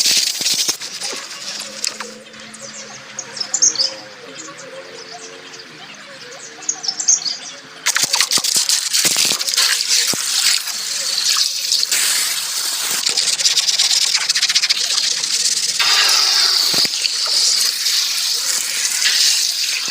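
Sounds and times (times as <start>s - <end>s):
high-pressure water jet spraying: 0.0s - 2.1s, 7.8s - 19.9s.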